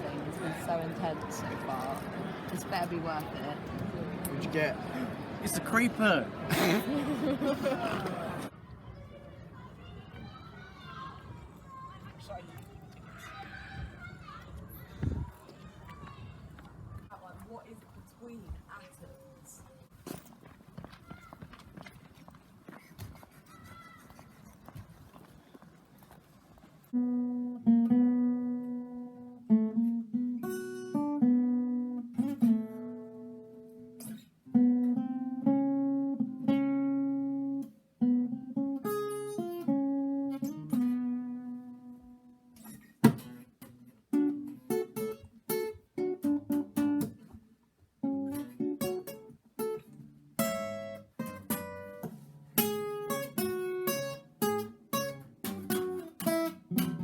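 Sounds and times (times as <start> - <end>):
acoustic guitar music: 0.0 - 8.5, 26.9 - 57.0.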